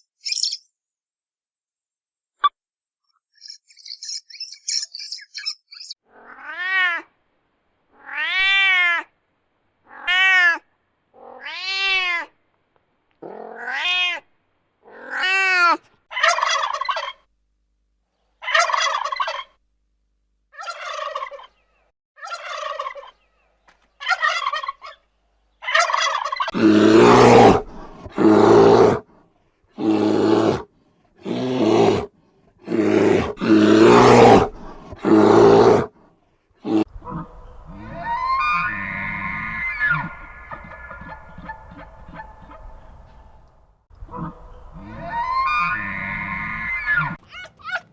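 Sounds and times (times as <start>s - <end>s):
animal calling: 25.6s - 29.0s, 31.2s - 35.9s, 36.6s - 47.9s.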